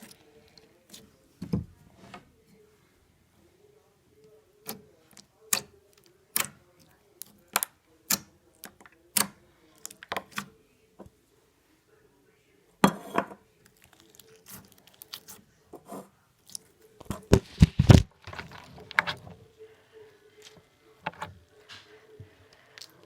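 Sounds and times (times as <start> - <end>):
slime clicking and crackling: 4.6 - 10.4, 13.6 - 15.4.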